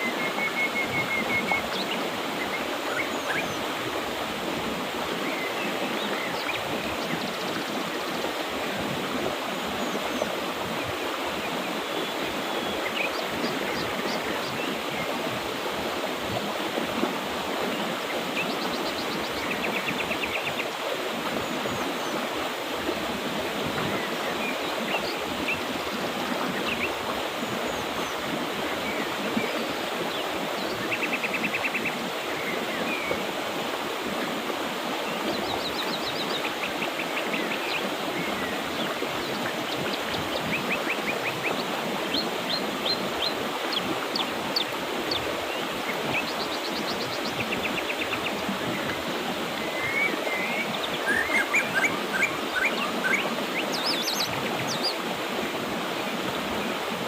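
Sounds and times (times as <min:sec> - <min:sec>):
river flowing: 0:00.0 - 0:57.0
birds chirping and trilling: 0:49.6 - 0:55.0.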